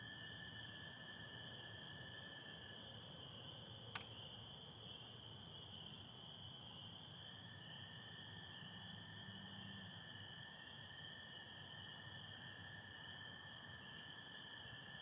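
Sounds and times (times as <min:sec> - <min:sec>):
sharp click: 0:03.9 - 0:04.2.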